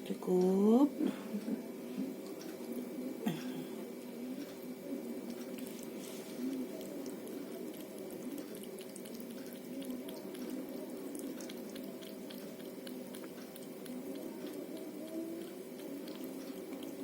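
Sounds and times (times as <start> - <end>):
steady background hum: 0.0 - 17.0
cat licking from a spoon: 5.1 - 17.0.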